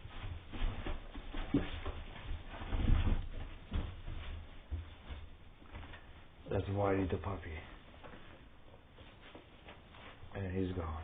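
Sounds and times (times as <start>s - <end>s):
puppies scuffling at play: 0.0s - 11.0s.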